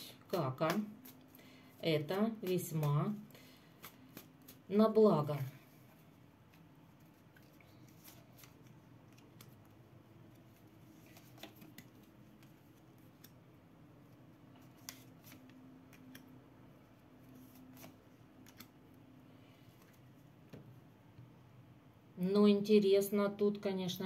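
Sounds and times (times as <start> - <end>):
cards clicking and flicking: 3.7 - 4.7, 17.6 - 18.8.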